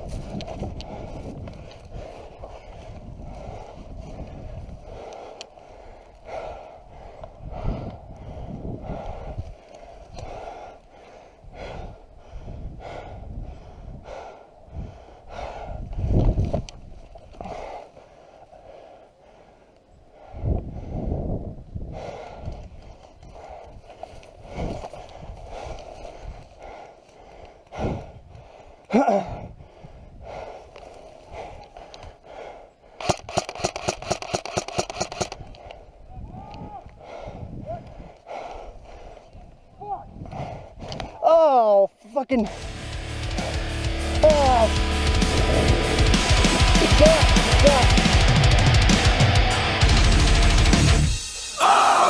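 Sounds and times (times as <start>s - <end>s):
person breathing heavily: 0.0s - 41.2s, 42.5s - 52.0s
heavy breath or grunt: 24.4s - 32.7s
airsoft gun full-auto burst: 33.0s - 35.4s, 42.5s - 49.4s.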